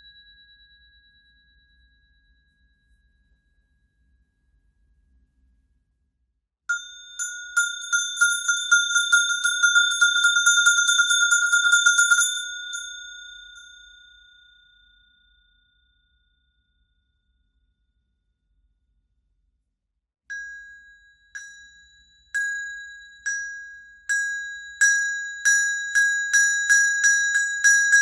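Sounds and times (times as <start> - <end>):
hand bell ringing: 6.7 - 14.9, 20.3 - 28.0.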